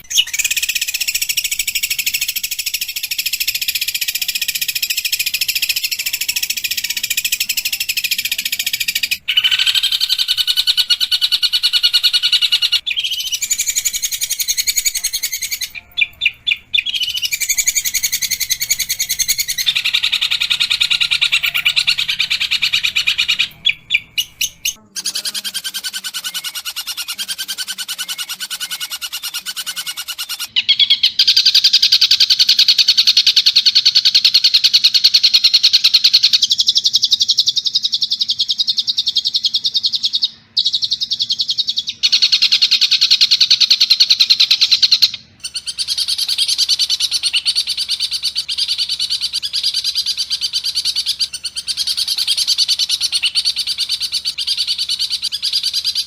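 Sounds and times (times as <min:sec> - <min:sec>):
shrike singing harsh chatter: 0:00.0 - 0:33.4.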